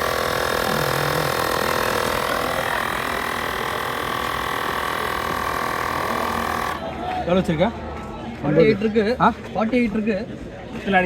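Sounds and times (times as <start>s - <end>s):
electric tyre inflator humming: 0.0s - 6.9s.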